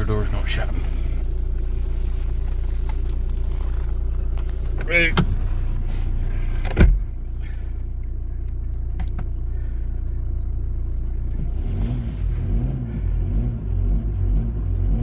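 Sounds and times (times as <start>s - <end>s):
diesel engine idling: 0.0s - 15.0s
heavy thump: 6.6s - 7.2s.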